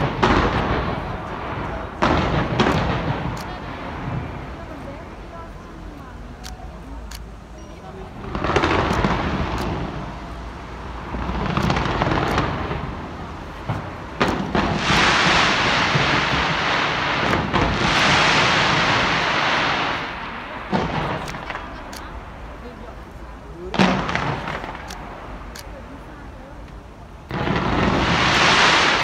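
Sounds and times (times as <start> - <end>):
fireworks bangs: 0.0 - 6.7, 7.7 - 26.5, 27.2 - 29.0
fireworks crackling: 0.0 - 29.0.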